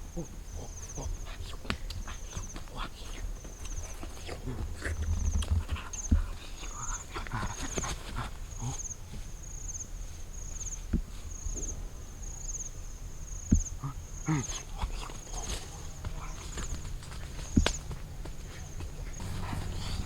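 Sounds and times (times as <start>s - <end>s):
insect chirping trills: 0.0s - 20.0s
dull thumps and knocks: 10.8s - 12.6s, 13.3s - 13.8s, 14.8s - 20.0s.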